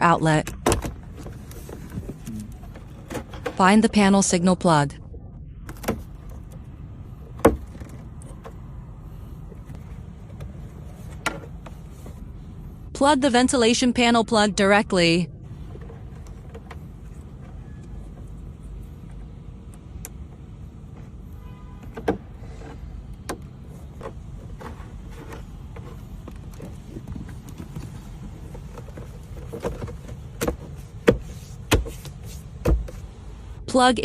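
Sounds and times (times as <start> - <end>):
steady low rumble: 0.0 - 21.4.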